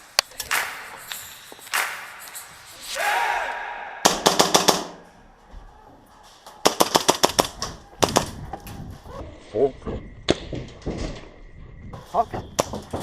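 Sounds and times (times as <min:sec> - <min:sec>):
rapid airsoft gunfire: 0:04.0 - 0:05.1, 0:06.6 - 0:08.4.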